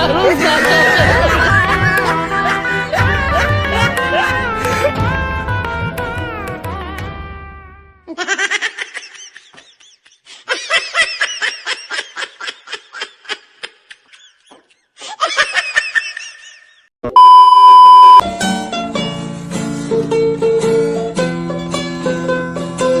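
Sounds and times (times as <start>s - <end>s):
high-pitched laughter: 8.1s - 14.5s
electronic beep: 17.1s - 18.2s.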